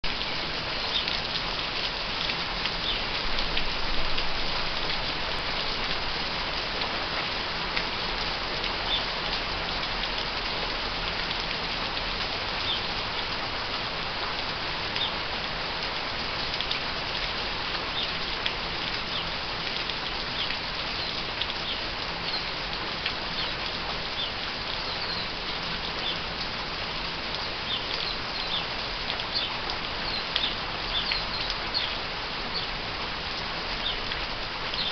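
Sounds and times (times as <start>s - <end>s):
steady rain falling: 0.0s - 34.9s
sparrows chirping: 24.9s - 25.3s, 29.4s - 32.7s.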